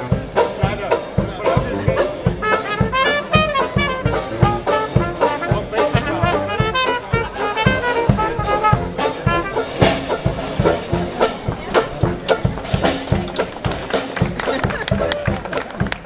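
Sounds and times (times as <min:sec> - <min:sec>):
bass drum beat: 0:00.0 - 0:16.0
jazz marching band playing: 0:00.0 - 0:16.0.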